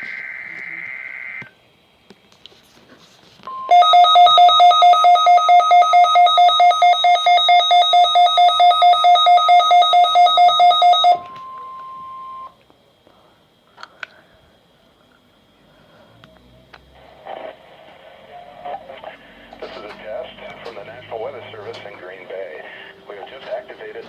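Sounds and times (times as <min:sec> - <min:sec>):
steady warning alarm tone: 0:00.0 - 0:01.5, 0:03.5 - 0:12.6, 0:18.8 - 0:24.0
pulsing alarm beeps: 0:03.5 - 0:12.6.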